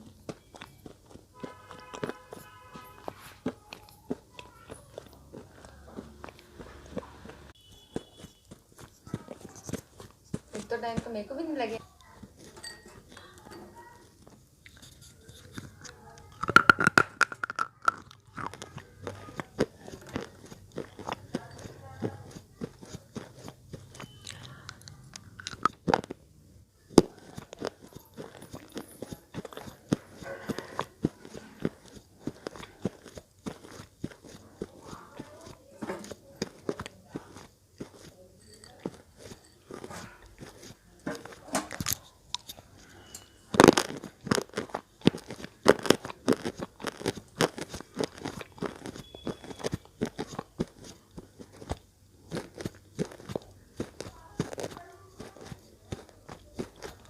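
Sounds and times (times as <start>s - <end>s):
sharp chewing crunches: 0.0s - 57.0s
pencil crunched between teeth: 38.9s - 54.8s.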